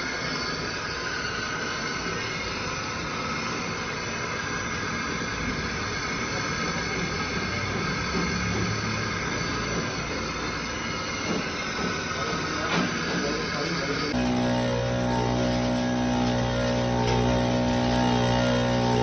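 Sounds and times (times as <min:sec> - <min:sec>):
machine tool rumbling: 0:14.1 - 0:19.0.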